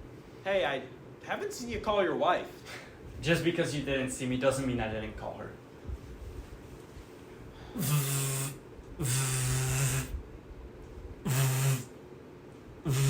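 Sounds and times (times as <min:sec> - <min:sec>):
man making low raspy vocal sounds: 0:07.8 - 0:10.2, 0:11.2 - 0:11.9.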